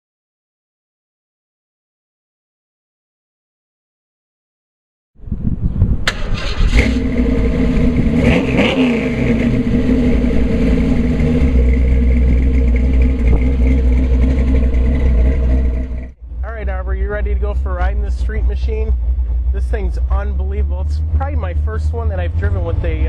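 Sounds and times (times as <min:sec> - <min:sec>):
car engine revving: 0:06.1 - 0:23.0.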